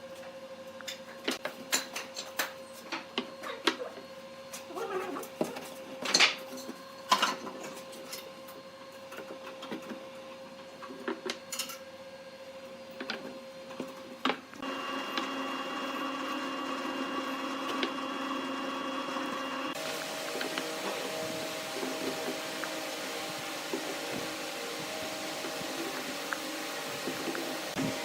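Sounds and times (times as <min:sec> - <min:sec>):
small electric motor running: 0:14.6 - 0:28.0
faint steady hum: 0:19.8 - 0:28.0.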